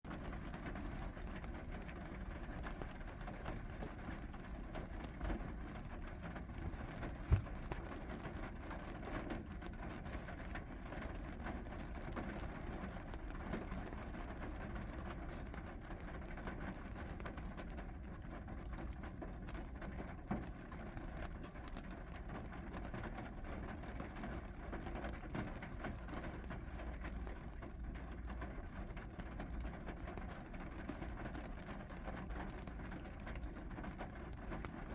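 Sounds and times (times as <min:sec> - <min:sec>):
steady rain falling: 0:00.1 - 0:07.4
short knock: 0:06.7 - 0:07.6.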